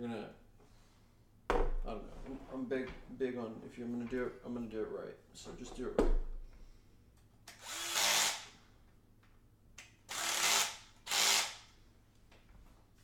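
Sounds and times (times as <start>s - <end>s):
cordless drill driving screws: 7.5s - 8.5s, 10.1s - 11.7s.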